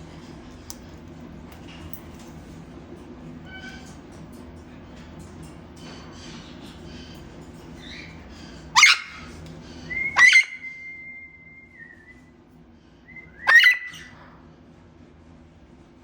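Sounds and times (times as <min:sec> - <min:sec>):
parrot calls: 0:07.8 - 0:10.8, 0:13.2 - 0:14.2
parrot long whistle: 0:09.9 - 0:12.2, 0:13.1 - 0:14.1.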